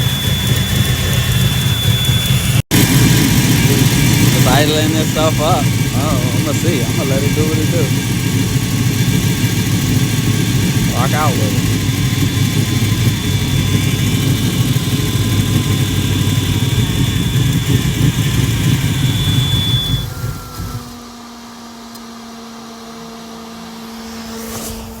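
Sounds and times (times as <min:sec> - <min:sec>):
engine choppy low rumble: 0:00.0 - 0:21.3
faint steady hum: 0:02.9 - 0:21.1.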